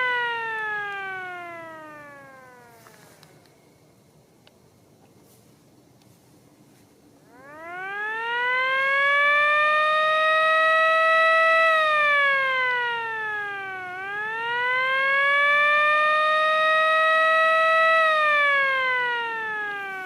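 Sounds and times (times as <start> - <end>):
electromechanical siren winding: 0.0 - 3.3, 7.3 - 20.0.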